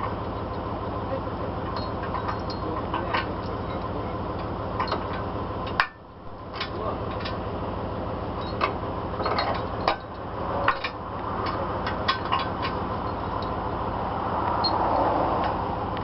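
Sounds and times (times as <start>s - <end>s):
heavy vehicle engine running: 0.0s - 16.0s
sharp metallic clicks and knocks: 1.6s - 7.4s, 8.4s - 13.6s.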